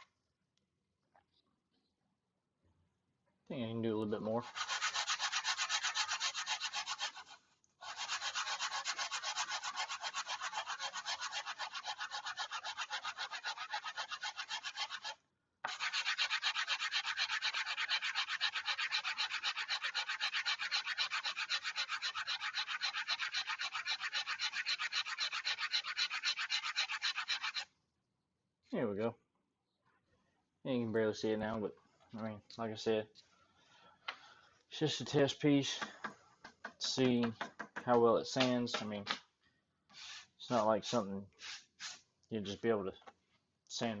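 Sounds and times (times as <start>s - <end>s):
sandpaper rubbing on a block: 4.4s - 27.7s, 40.0s - 40.4s, 41.4s - 42.0s.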